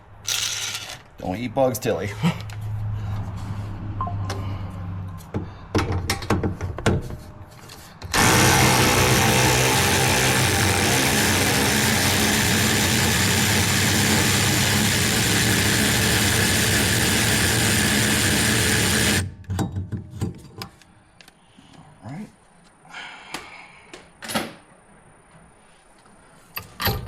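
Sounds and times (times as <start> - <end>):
metal parts clinking: 0.2 - 1.1
power tool spinning out bolt: 0.2 - 1.1, 8.1 - 19.3.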